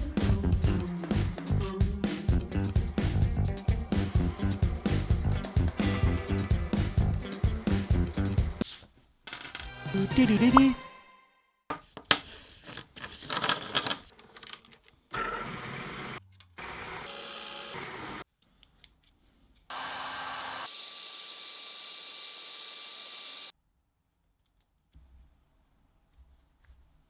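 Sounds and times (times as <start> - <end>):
clatter of small parts: 12.0 - 15.1
small power tool running: 16.6 - 18.2, 19.7 - 23.5.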